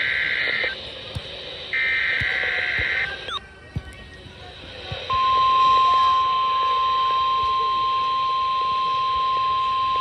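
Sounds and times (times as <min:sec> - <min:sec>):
steady alarm beep: 0:05.1 - 0:10.0.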